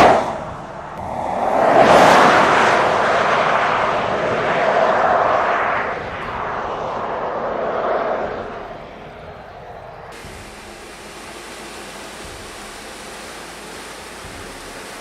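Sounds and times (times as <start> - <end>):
vehicle passing by: 0.0 - 10.2.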